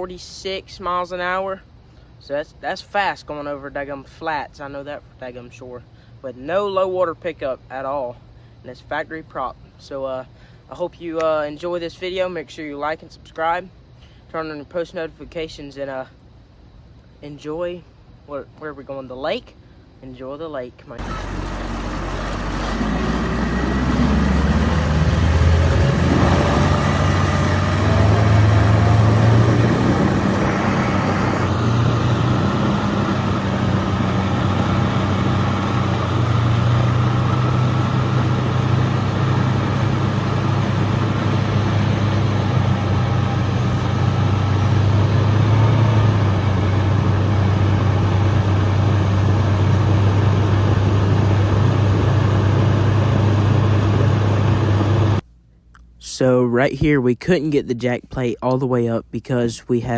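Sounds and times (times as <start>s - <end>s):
outboard motor running: 21.0s - 55.2s.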